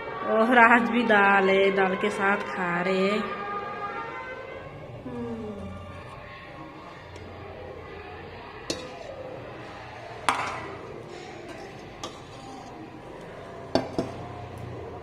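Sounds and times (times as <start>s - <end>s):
dishes clinking: 8.6s - 9.2s, 10.3s - 14.5s.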